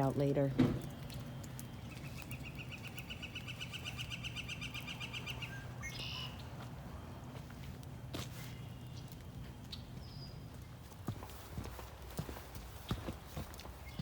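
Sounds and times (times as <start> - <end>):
songbird trilling: 1.0 - 6.6
high bird call: 1.9 - 6.5.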